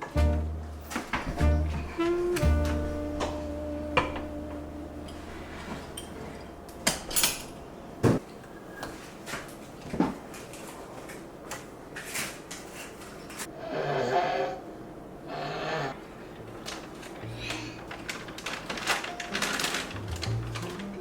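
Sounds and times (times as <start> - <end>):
low held note: 0.0 - 5.8
dishes and utensils clinking: 4.0 - 7.6.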